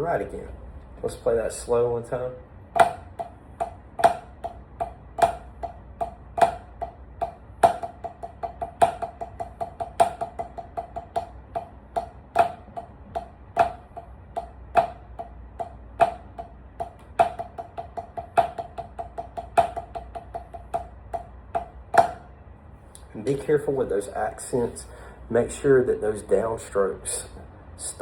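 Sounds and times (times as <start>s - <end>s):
drumsticks playing rudiments: 2.8s - 22.3s.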